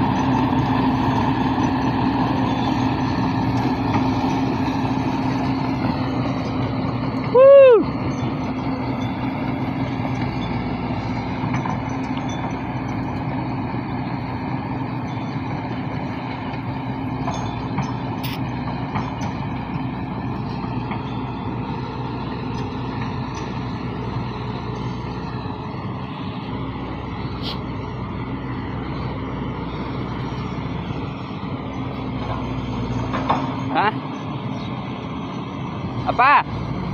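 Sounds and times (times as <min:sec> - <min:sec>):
excavator diesel engine running: 0:00.0 - 0:36.9.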